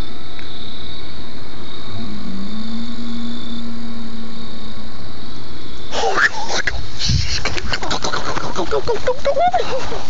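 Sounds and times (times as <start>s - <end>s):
frogs and insects at night: 0.0s - 10.0s
low tone: 1.5s - 6.0s.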